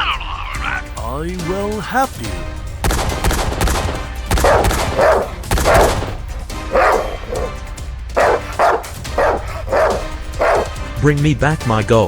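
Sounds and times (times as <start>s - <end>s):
background music: 0.0s - 12.0s
dog barking: 4.4s - 10.9s.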